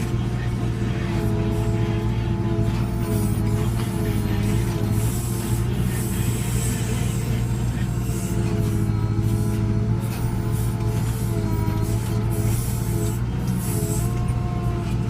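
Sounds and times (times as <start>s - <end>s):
diesel engine running under load: 0.0s - 15.0s
hydraulic whine: 0.0s - 15.0s.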